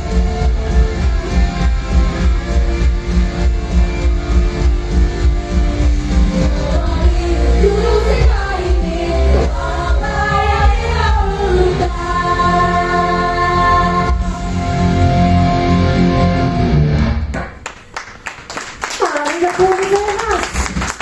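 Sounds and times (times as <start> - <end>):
rock band playing live: 0.0 - 13.0, 13.6 - 17.4
woman singing: 6.4 - 14.5.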